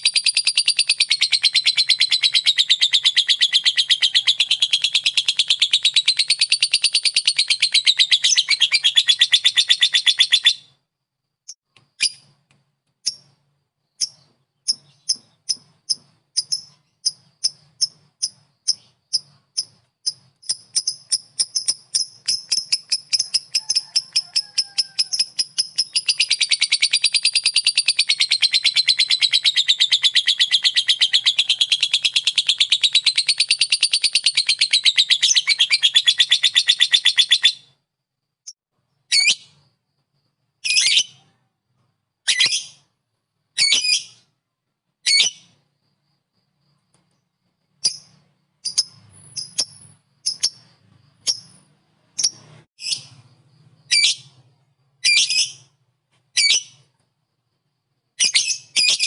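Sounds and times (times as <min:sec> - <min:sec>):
lovebird chattering trill: 0:00.0 - 0:10.8, 0:12.0 - 0:12.4, 0:14.0 - 0:37.7, 0:45.0 - 0:45.6, 0:47.8 - 0:53.2, 0:53.8 - 0:54.4, 0:55.0 - 0:55.8, 0:56.4 - 0:56.8, 0:58.2 - 0:59.0.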